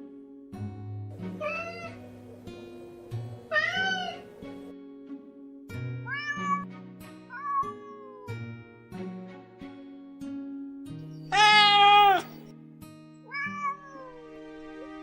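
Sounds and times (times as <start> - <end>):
background music: 0.0 - 15.0
cat meowing: 1.4 - 2.0, 3.5 - 4.2, 6.1 - 6.7, 7.3 - 8.3, 11.3 - 12.4, 13.3 - 14.2.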